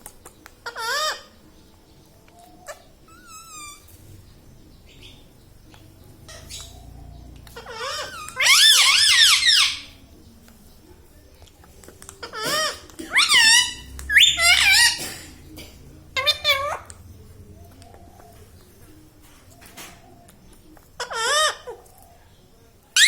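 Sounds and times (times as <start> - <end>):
parrot calling: 0.6 - 1.4, 2.4 - 4.2, 6.3 - 10.1, 12.2 - 17.0, 19.6 - 22.2.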